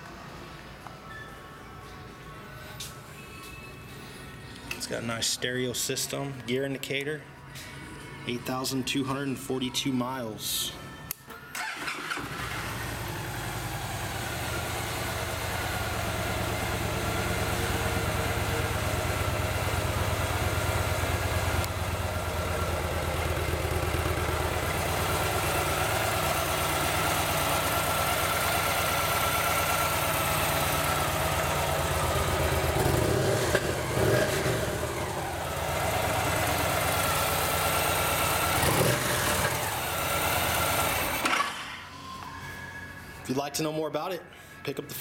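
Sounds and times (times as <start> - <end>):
motorcycle engine idling and revving: 11.7 - 41.7.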